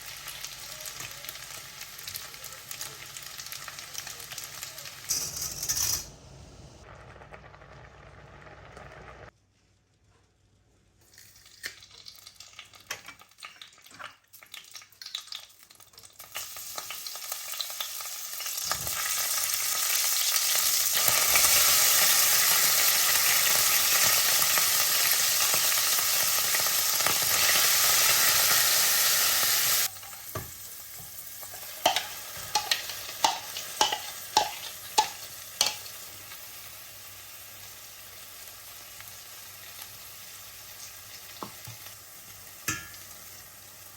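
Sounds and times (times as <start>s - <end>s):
food sizzling in oil: 0.0s - 5.1s, 11.1s - 43.9s
utensil tapping against pan: 31.9s - 35.8s.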